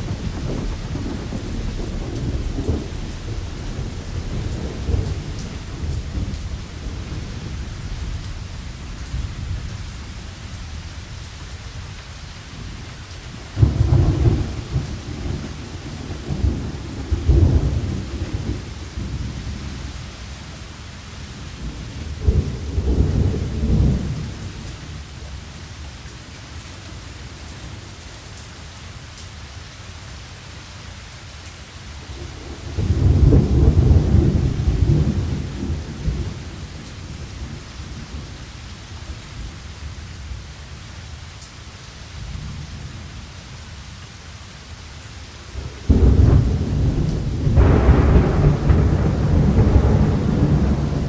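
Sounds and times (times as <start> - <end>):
rolling thunder: 0.0 - 9.8, 13.5 - 20.1, 21.5 - 25.2, 32.3 - 38.4, 45.6 - 51.0
steady rain: 0.0 - 51.0.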